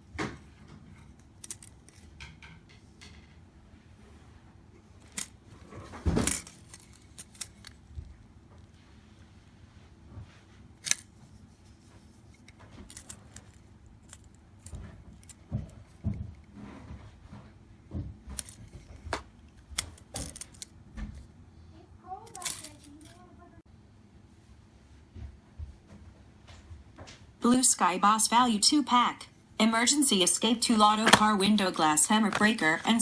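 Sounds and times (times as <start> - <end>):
handling clicks and knocks: 30.8 - 33.0.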